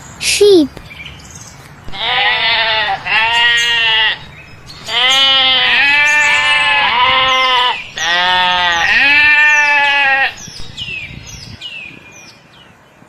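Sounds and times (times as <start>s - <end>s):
sheep bleating: 1.9s - 10.4s.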